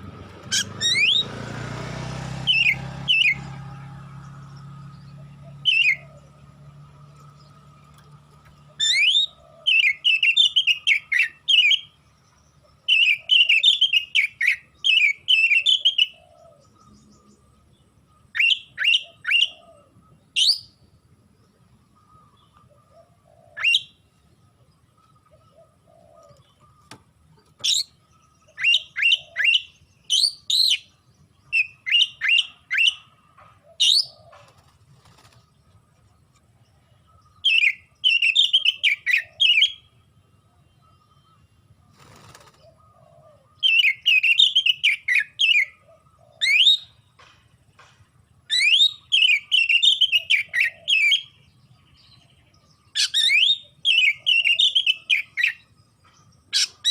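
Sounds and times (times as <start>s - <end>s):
bird singing whistled notes: 0.4s - 1.4s, 2.4s - 3.5s, 4.5s - 6.5s, 8.6s - 21.0s, 21.9s - 24.4s, 27.6s - 33.2s, 36.7s - 41.7s, 42.4s - 47.1s, 48.4s - 56.9s.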